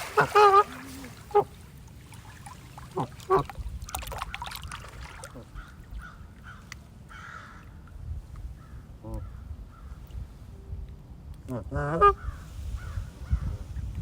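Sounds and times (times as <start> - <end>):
waterfowl harsh calls: 0.0 - 1.6
water splashes: 0.0 - 6.0.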